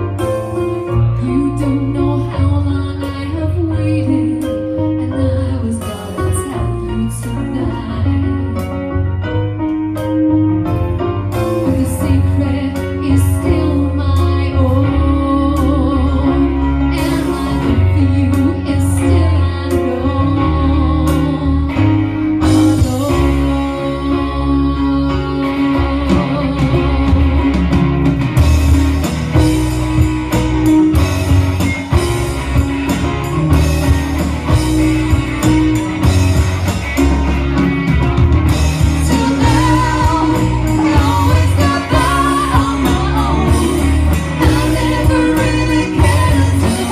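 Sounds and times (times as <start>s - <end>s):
rock band playing: 0.0s - 46.9s
person singing: 11.4s - 27.8s, 38.7s - 46.9s.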